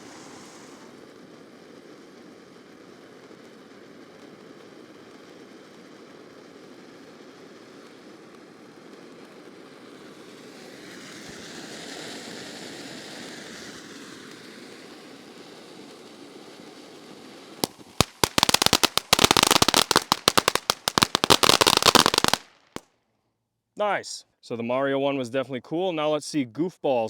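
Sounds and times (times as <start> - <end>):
firework fountain hissing: 0.0 - 22.9
firework crackling: 0.0 - 23.0.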